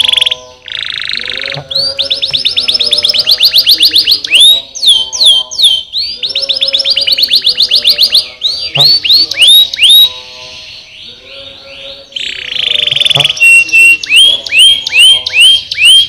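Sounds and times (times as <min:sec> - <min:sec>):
canary singing: 0:00.0 - 0:16.0.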